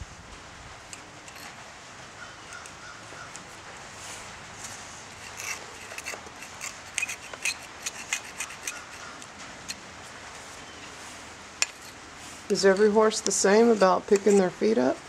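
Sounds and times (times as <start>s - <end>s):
steady background hiss: 0.0s - 15.0s
hoof pick scraping hoof: 4.0s - 15.0s.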